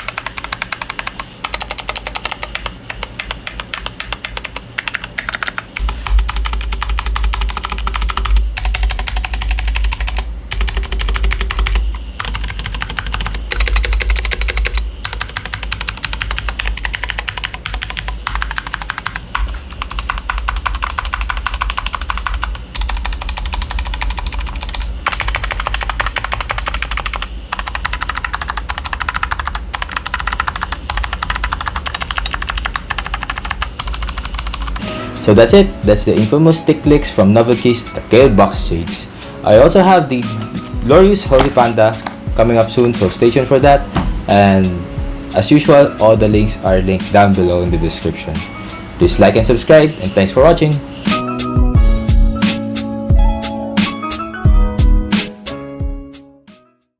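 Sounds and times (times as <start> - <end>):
mechanical keyboard typing: 0.0 - 34.9, 41.2 - 43.3.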